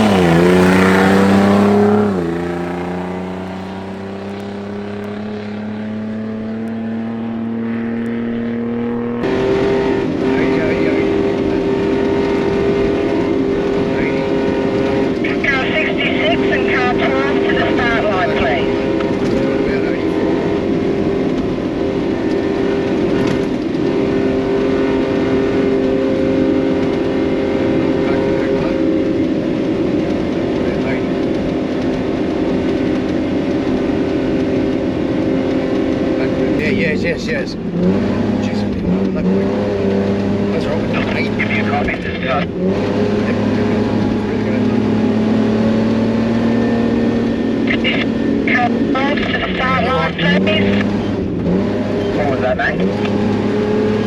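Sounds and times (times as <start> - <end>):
steady engine note: 0.0 - 29.9
engine accelerating under load: 0.0 - 54.0
vehicle drive noise: 0.0 - 54.0.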